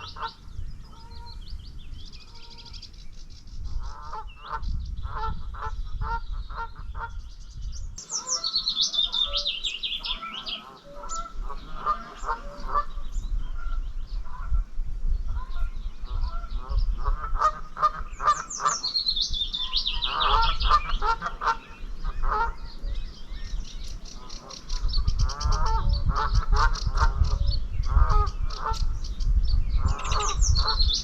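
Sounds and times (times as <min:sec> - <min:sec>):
geese honking: 0:00.0 - 0:01.4, 0:08.0 - 0:14.7, 0:15.3 - 0:28.9, 0:29.8 - 0:31.0
songbird trilling: 0:06.4 - 0:31.0.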